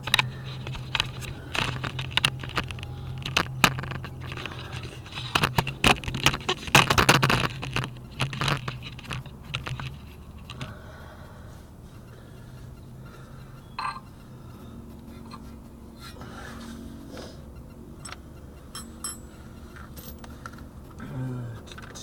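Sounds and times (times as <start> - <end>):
steady low hum: 0.0 - 22.0
metal tools clinking and scraping: 13.6 - 14.1, 18.0 - 20.6.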